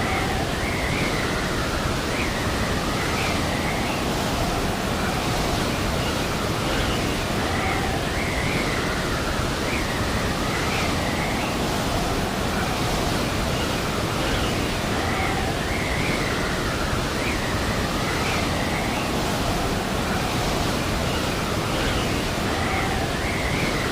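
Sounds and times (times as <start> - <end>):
blizzard wind rushing: 0.0 - 23.9
wind whistling: 0.0 - 23.9.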